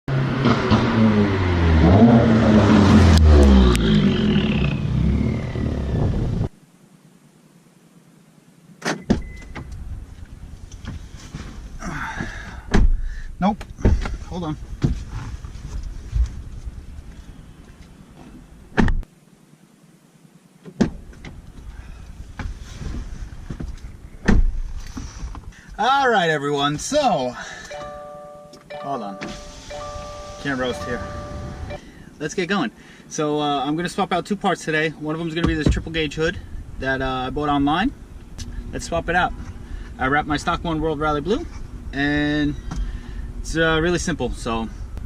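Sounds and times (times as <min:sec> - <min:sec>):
car engine accelerating: 0:00.1 - 0:06.5, 0:29.3 - 0:31.8
high whine: 0:00.4 - 0:10.2, 0:25.8 - 0:32.4.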